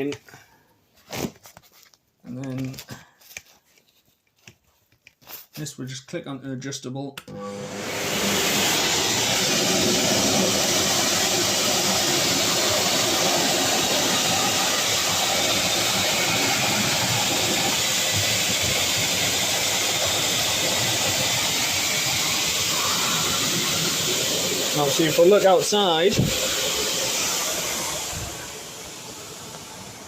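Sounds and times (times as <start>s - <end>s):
grooming blower whooshing air: 7.3s - 30.0s.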